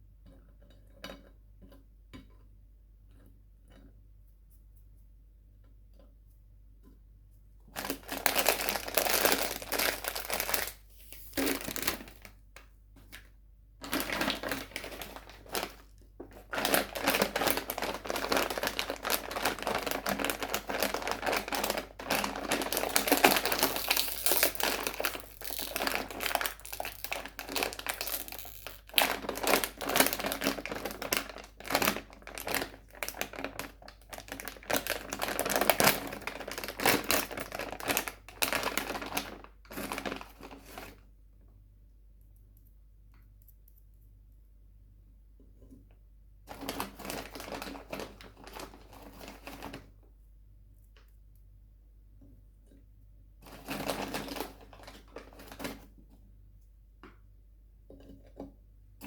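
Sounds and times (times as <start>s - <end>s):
sweet wrappers crinkling: 7.8s - 41.0s.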